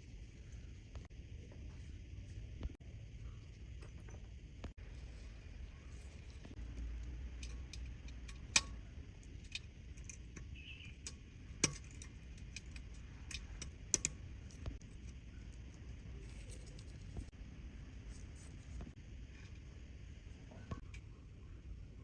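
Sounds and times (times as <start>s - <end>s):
low steady hum: 0.0s - 22.0s
small metallic clicks and taps: 6.5s - 15.2s.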